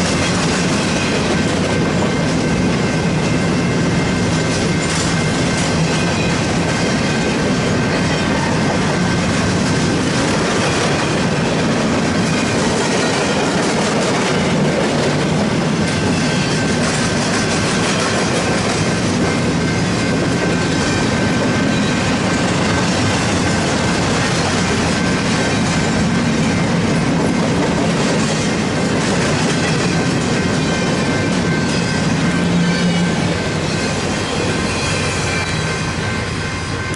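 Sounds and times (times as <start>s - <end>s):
freight cars rumbling over rails: 0.0s - 36.9s.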